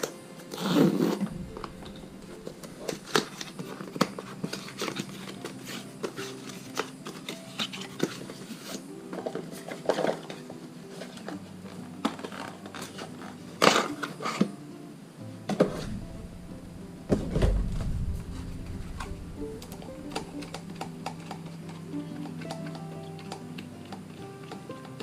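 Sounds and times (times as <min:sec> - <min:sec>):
rustling burst: 0:00.9 - 0:03.7, 0:15.7 - 0:21.0
packaging crinkling and clicking: 0:02.6 - 0:14.4.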